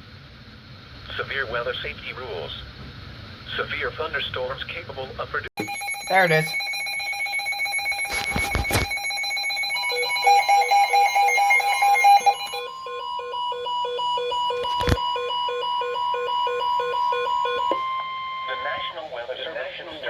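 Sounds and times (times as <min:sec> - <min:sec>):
electronic alarm beeping: 0:05.6 - 0:19.0
steady warning alarm tone: 0:05.6 - 0:19.3.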